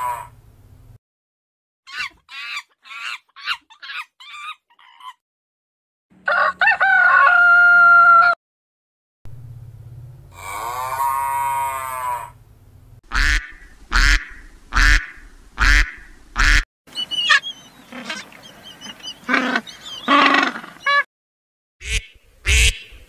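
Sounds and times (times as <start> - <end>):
rooster crowing: 6.2 - 8.4
ducks quacking: 13.1 - 16.6, 17.2 - 21.0, 21.8 - 22.9
small birds chirping: 16.9 - 21.0.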